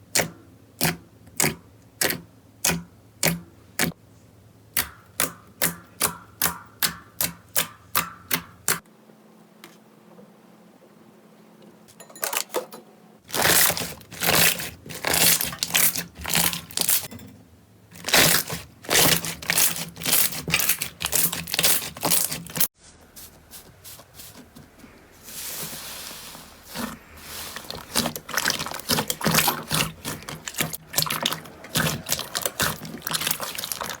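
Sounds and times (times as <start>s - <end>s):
crunchy slime crackling: 13.2s - 17.1s, 18.0s - 22.7s, 26.6s - 34.0s
soft slime handling: 22.8s - 34.0s.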